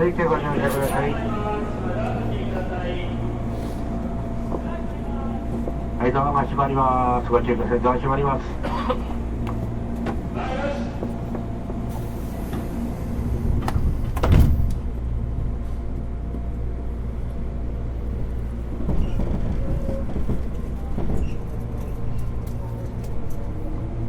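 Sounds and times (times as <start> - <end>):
train car low hum: 0.0 - 24.0
train doors sliding shut: 8.6 - 15.9.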